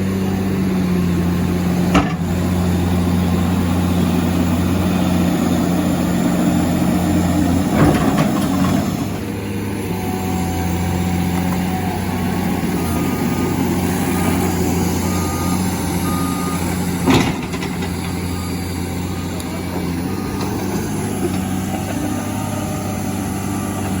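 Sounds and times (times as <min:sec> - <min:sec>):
diesel engine running: 0:00.0 - 0:24.0
backup alarm beeping: 0:15.0 - 0:16.8.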